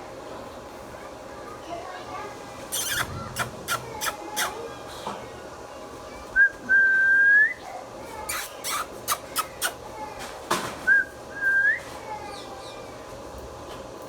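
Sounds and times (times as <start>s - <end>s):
parrot calling: 2.7s - 4.6s
parrot whistle: 2.8s - 4.2s.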